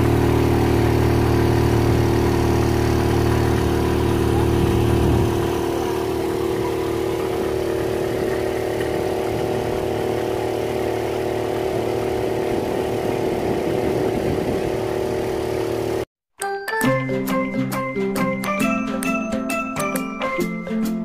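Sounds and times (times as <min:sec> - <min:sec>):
outboard motor humming: 0:00.0 - 0:16.1.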